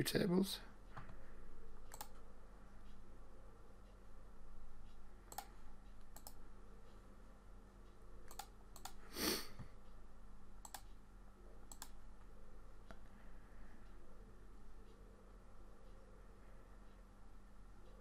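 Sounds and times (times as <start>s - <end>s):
low electrical hum: 0.0s - 18.0s
computer mouse clicks: 1.8s - 2.2s, 5.3s - 6.4s, 8.2s - 9.0s, 10.6s - 11.0s, 11.7s - 12.0s.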